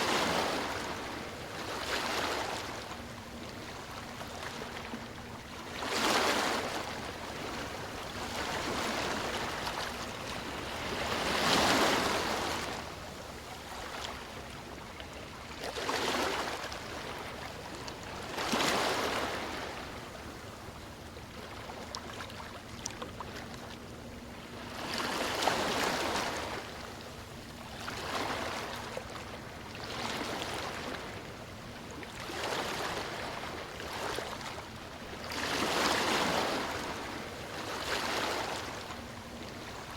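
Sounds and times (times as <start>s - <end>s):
sea waves breaking on beach: 0.0s - 2.9s, 5.7s - 13.0s, 18.1s - 20.1s, 35.2s - 39.9s.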